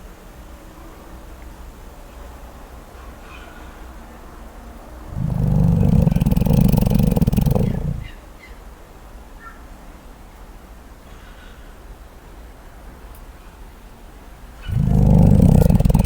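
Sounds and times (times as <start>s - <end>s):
koala rattling snore: 5.1s - 8.1s, 14.6s - 16.0s.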